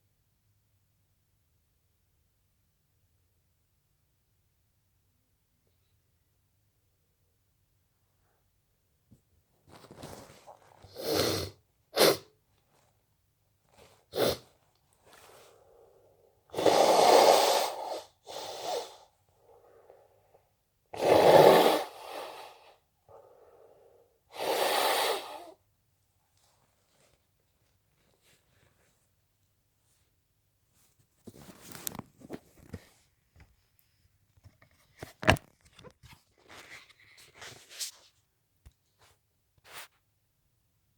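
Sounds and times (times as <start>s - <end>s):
tissue rustling: 9.5s - 11.0s, 12.4s - 16.0s, 26.2s - 33.1s
nose blowing: 10.9s - 12.3s, 14.1s - 14.5s, 16.5s - 19.0s, 20.9s - 22.7s, 24.3s - 25.6s
person sniffling: 10.9s - 12.3s.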